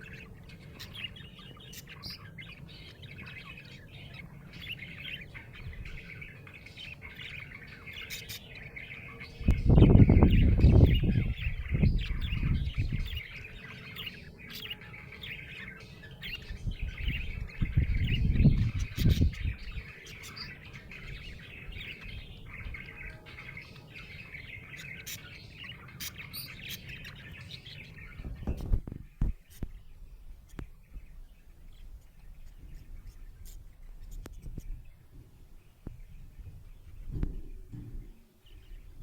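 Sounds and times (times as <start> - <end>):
budgie chirping: 16.4 - 27.7.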